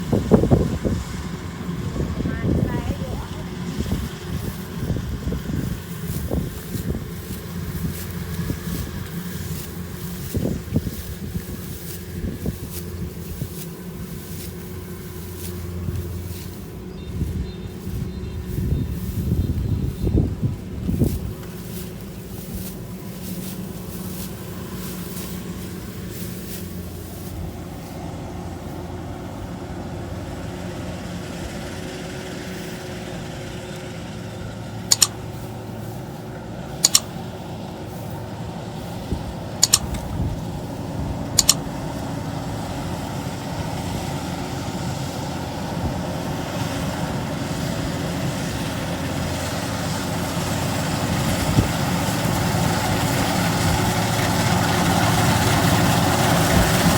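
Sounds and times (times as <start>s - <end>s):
combine harvester engine running: 0.0s - 56.9s
short sharp clicks: 34.9s - 35.2s, 36.8s - 37.1s, 39.6s - 40.1s, 41.4s - 41.6s.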